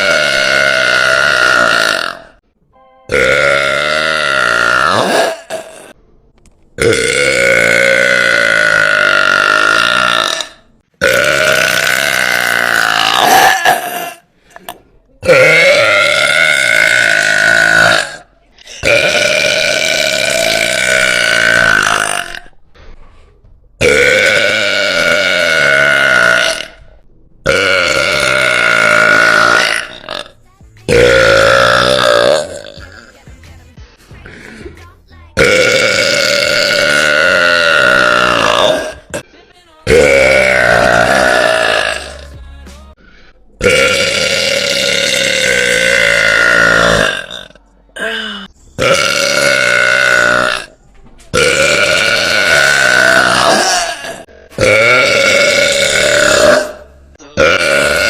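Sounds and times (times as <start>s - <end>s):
woman burping loudly: 0.0s - 2.4s, 3.1s - 6.0s, 6.8s - 22.6s, 23.8s - 33.2s, 35.4s - 42.4s, 43.6s - 58.0s.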